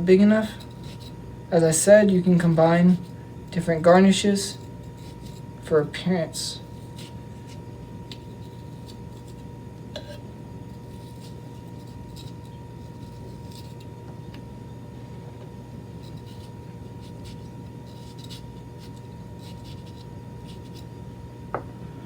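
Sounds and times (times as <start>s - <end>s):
electrical hum: 0.0s - 22.0s
knife cutting vegetables: 4.4s - 5.4s, 6.6s - 9.4s, 10.0s - 13.9s, 16.0s - 20.9s.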